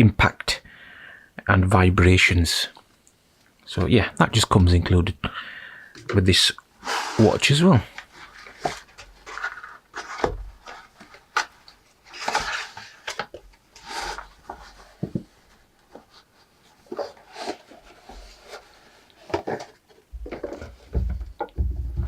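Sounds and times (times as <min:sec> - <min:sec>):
packaging rubbing and scraping: 0:06.8 - 0:15.1, 0:16.2 - 0:20.8.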